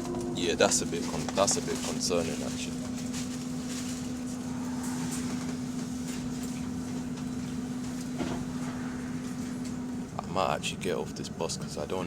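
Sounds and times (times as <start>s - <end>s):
electric drivetrain hum: 0.0s - 12.0s
rumble of moving bus: 0.0s - 12.0s.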